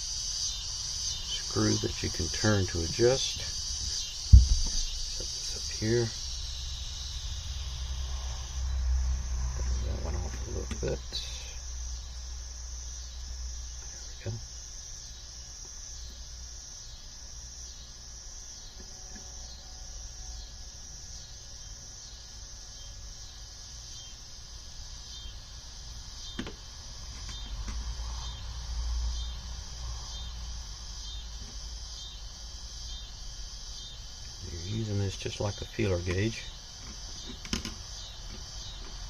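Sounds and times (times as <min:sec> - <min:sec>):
crickets chirring: 0:00.0 - 0:39.0.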